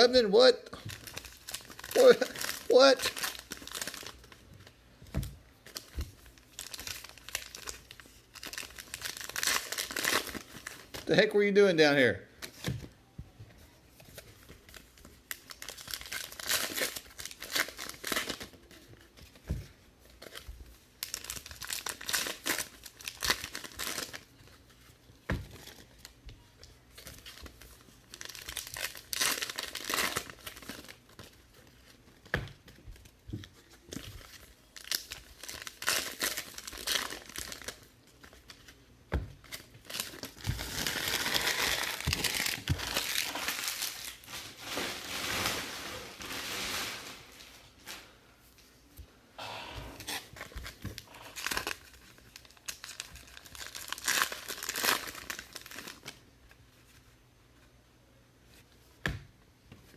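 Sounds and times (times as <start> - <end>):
foil wrappers tearing and crinkling: 0.9 - 4.3, 5.7 - 11.1, 15.3 - 18.8, 21.0 - 24.3, 26.9 - 31.6, 33.6 - 38.6, 39.4 - 48.0, 50.0 - 56.2.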